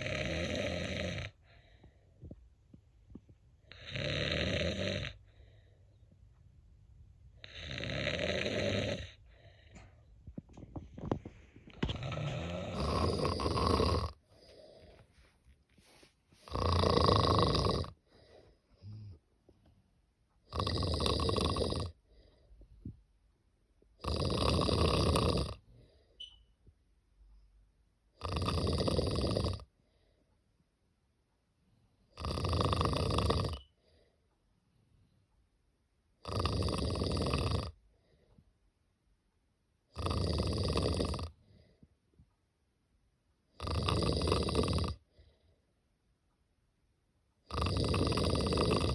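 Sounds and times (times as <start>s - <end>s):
cat snoring: 0.0s - 1.8s, 3.7s - 5.6s, 7.4s - 9.9s, 11.7s - 14.9s, 16.4s - 19.1s, 20.4s - 22.4s, 24.0s - 26.0s, 28.2s - 29.7s, 32.1s - 34.0s, 36.2s - 37.8s, 39.9s - 41.7s, 43.5s - 45.4s, 47.4s - 48.9s
faint breaths: 1.3s - 3.9s, 5.1s - 6.4s, 8.5s - 16.8s, 17.9s - 19.9s.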